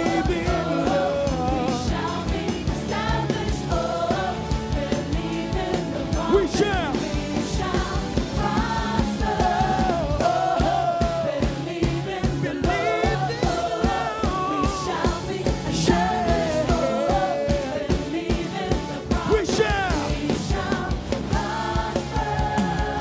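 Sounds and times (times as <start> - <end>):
person singing: 0.0 - 2.2, 12.4 - 20.8
gospel band playing: 0.0 - 23.0
steady drum beat: 0.0 - 23.0.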